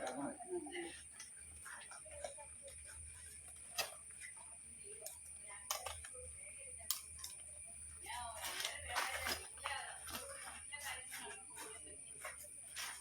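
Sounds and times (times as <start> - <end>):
faint voices: 0.0 - 13.0.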